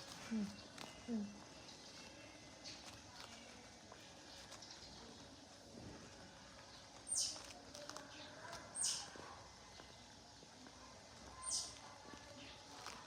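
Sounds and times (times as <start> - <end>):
high-pitched animal squeaks: 11.4 - 11.8.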